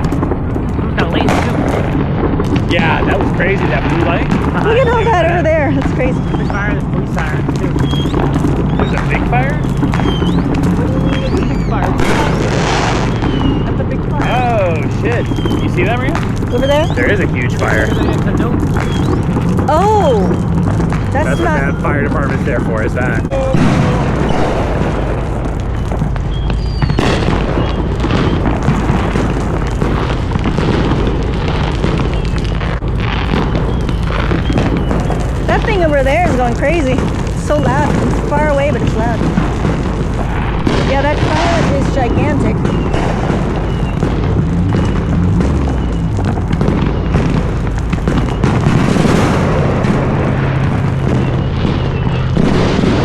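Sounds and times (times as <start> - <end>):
low steady hum: 0.0 - 25.8
fireworks booming and crackling: 0.0 - 53.0.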